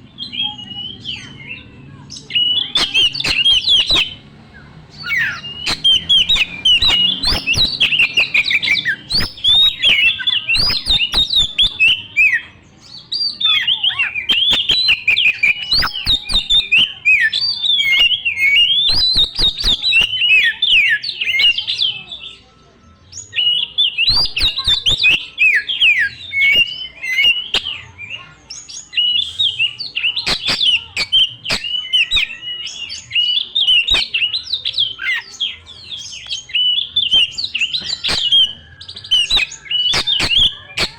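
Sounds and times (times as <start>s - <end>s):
bird singing varied whistles: 2.2s - 4.2s, 4.9s - 22.0s, 23.2s - 27.9s, 28.9s - 40.9s
sharp bird clicks: 2.8s - 4.2s, 5.0s - 12.4s, 14.3s - 21.6s, 24.1s - 25.3s, 26.4s - 27.8s, 29.3s - 32.4s, 37.0s - 40.9s.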